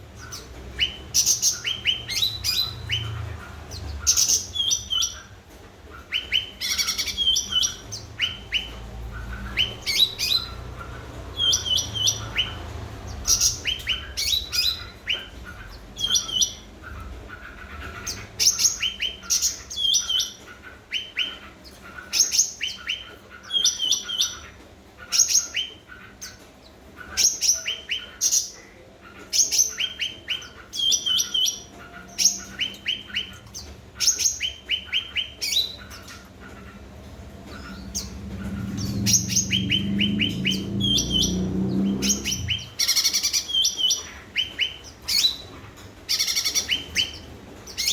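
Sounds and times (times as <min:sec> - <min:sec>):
songbird high chirps: 0:37.3 - 0:45.5.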